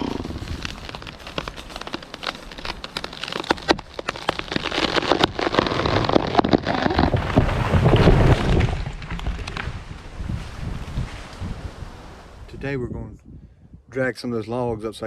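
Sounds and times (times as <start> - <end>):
tree wood cracking and snapping: 0.0 - 10.2.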